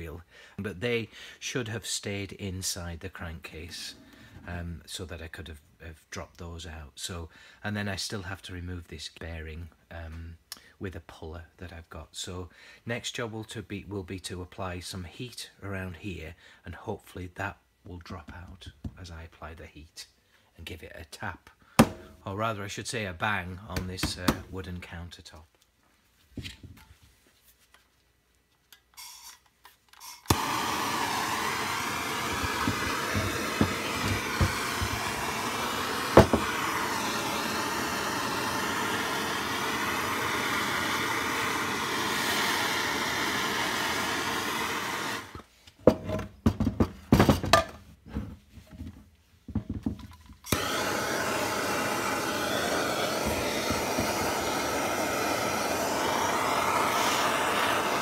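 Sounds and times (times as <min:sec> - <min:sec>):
heat gun blowing: 0:21.8 - 0:22.2, 0:29.0 - 0:45.5, 0:50.5 - 0:58.0.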